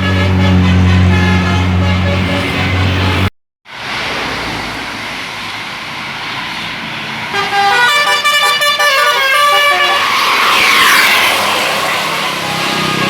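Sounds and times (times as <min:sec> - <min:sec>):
multi-tone air horn tune: 0:00.0 - 0:03.3, 0:07.3 - 0:10.2
road and engine noise: 0:00.0 - 0:13.0.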